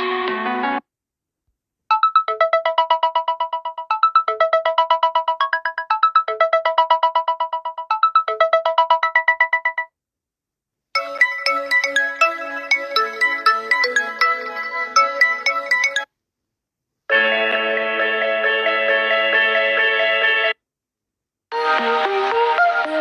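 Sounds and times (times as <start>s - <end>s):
busier phone ringtone: 1.9s - 9.9s, 11.0s - 16.1s
phone ringtone melody: 1.9s - 9.9s, 11.0s - 16.1s.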